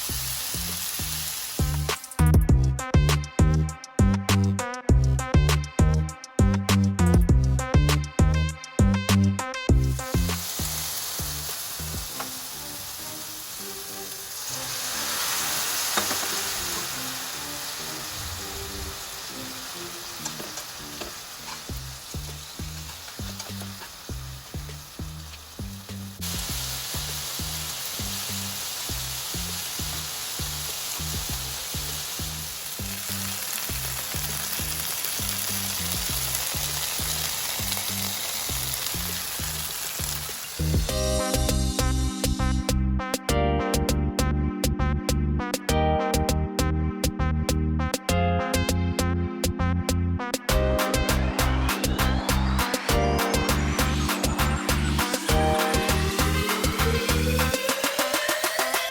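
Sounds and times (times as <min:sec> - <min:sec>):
chicken sizzling in a pan: 0:00.0 - 0:02.4, 0:09.8 - 0:42.5, 0:50.9 - 0:58.9
background music with beat: 0:00.0 - 0:28.2, 0:28.9 - 0:33.0, 0:40.0 - 0:58.9.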